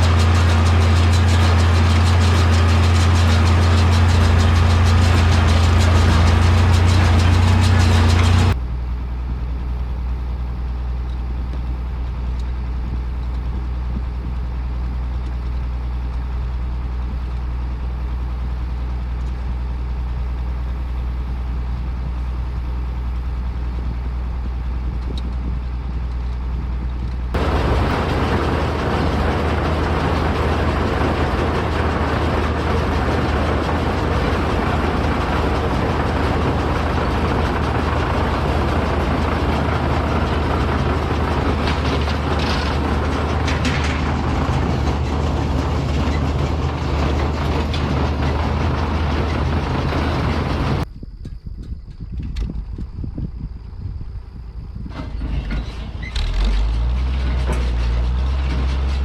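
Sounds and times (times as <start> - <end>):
tractor engine running: 0.0 - 59.0.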